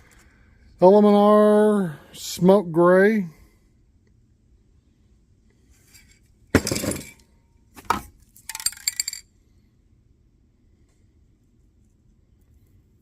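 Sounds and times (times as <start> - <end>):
metallic clinks: 8.4 - 9.3.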